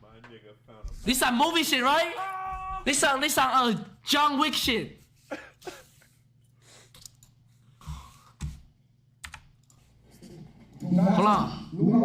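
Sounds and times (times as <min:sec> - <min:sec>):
computer keyboard clicks: 0:06.9 - 0:07.4, 0:09.2 - 0:09.8.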